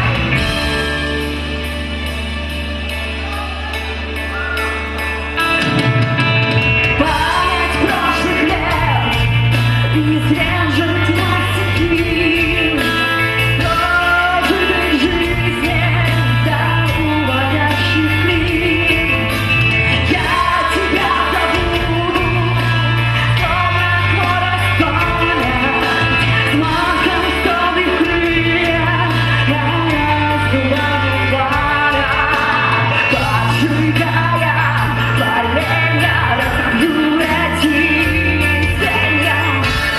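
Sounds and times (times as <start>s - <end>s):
live rock band playing: 0.0s - 39.9s
woman singing: 7.0s - 39.9s.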